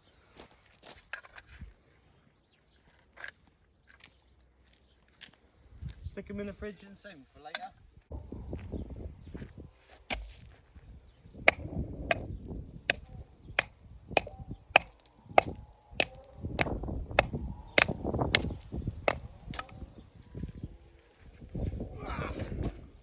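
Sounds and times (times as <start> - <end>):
hammer striking stone: 10.1 - 10.5, 11.5 - 12.3, 12.9 - 19.8.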